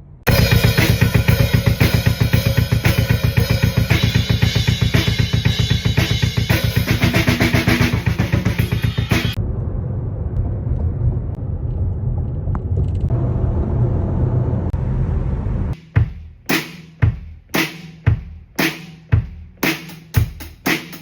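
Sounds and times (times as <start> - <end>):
music with heavy drum beat: 0.3 - 9.4, 15.8 - 21.0
low rumble: 9.3 - 15.8.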